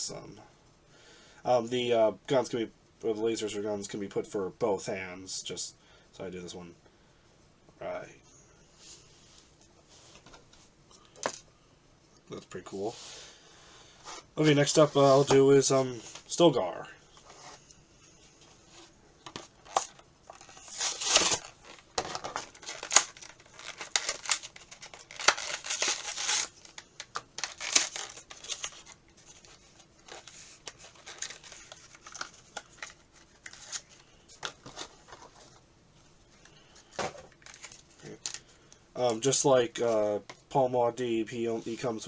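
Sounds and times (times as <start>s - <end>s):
plastic and tape crinkling: 18.4s - 35.6s, 36.2s - 40.4s.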